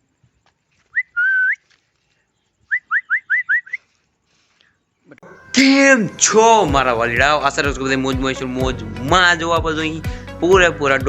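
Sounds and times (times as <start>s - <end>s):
high whistled notes: 2.7s - 3.8s, 5.2s - 9.9s.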